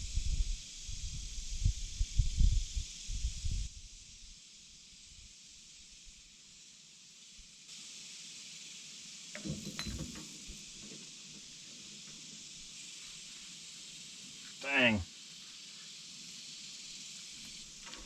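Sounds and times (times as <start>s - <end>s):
faint hiss: 0.0s - 18.0s
metallic clinks of tools: 9.4s - 10.5s.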